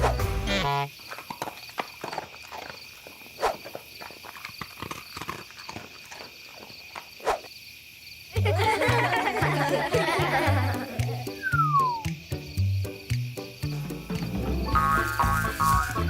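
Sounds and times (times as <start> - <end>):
music: 0.0 - 0.8, 8.4 - 16.0.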